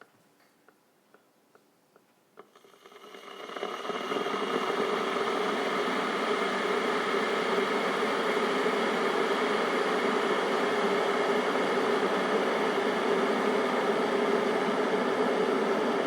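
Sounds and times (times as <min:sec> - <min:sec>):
kettle ticking: 0:02.3 - 0:10.6
kettle water rushing to boil: 0:02.4 - 0:16.0.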